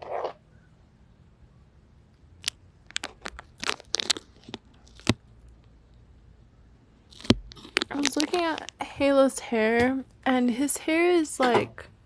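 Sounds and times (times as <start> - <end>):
sharp crunching clicks: 2.4 - 5.8, 7.1 - 8.8.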